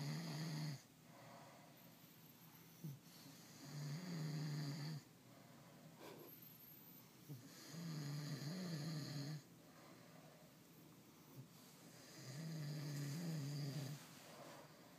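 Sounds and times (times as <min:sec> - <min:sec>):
dog snoring: 0:00.0 - 0:00.9, 0:02.5 - 0:05.1, 0:07.2 - 0:09.5, 0:11.2 - 0:14.1
quiet dog breathing: 0:00.8 - 0:04.1, 0:04.9 - 0:14.9.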